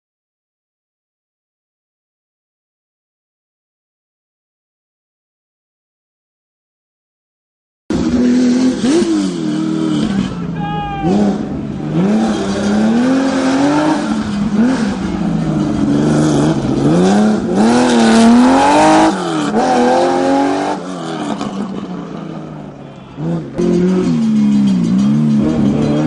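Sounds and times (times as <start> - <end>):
rally car engine revving: 7.9 - 26.0
second rally car engine: 7.9 - 26.0.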